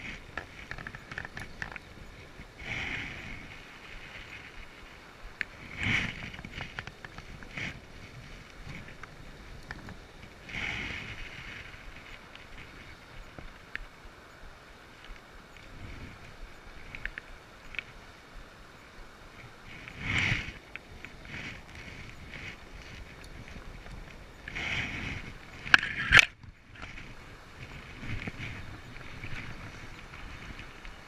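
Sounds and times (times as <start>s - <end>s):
river water running: 0.0s - 31.0s
small clicks: 19.4s - 31.0s.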